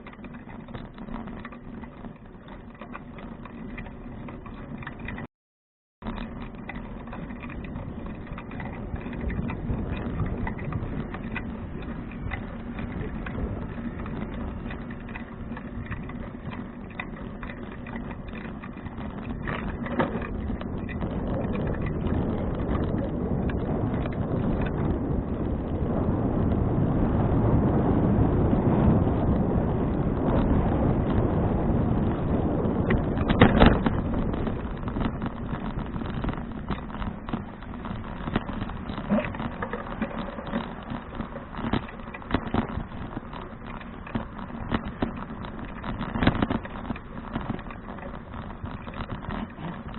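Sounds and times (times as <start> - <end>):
road rumble: 0.0 - 5.3, 6.0 - 49.9
wind noise: 6.0 - 49.9
bike knocking over bump: 32.7 - 49.9.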